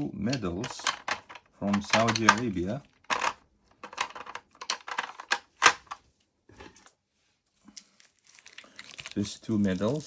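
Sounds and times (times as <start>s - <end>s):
plastic holders clicking together: 0.3s - 6.0s.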